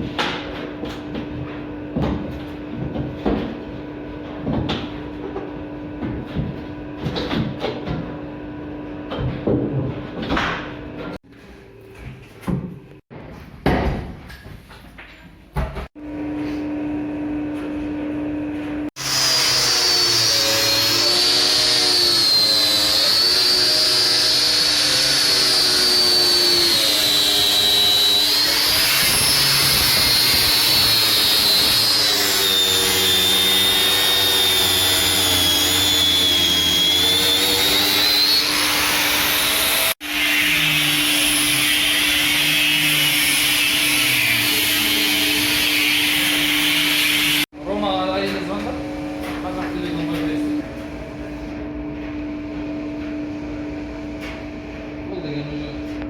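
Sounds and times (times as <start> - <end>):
power tool motor whining: 19.0 - 47.5.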